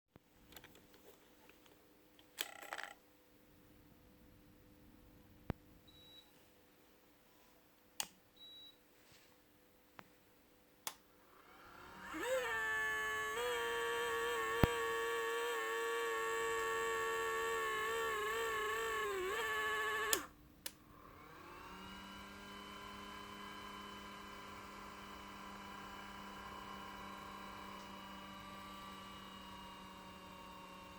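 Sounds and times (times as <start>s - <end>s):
led light electrical whine: 8.9s - 30.9s.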